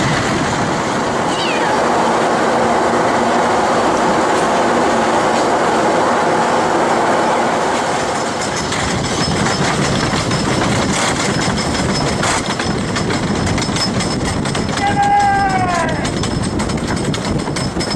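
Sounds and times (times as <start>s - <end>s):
roller coaster rumbling on wooden track: 0.0s - 17.9s.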